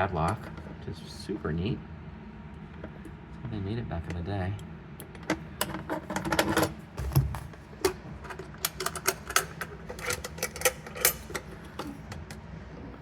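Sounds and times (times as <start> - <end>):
metal padlock clicking: 5.0 - 12.4.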